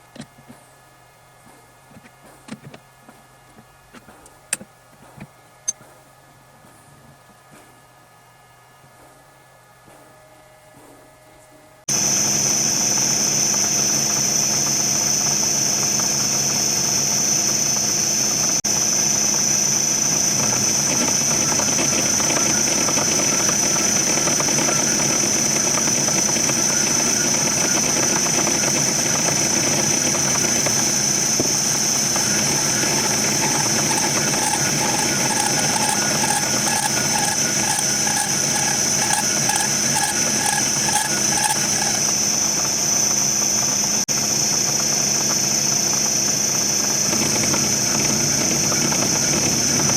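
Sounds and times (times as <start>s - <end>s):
fast even pulsing: 11.9s - 49.9s
power tool whining: 11.9s - 49.9s.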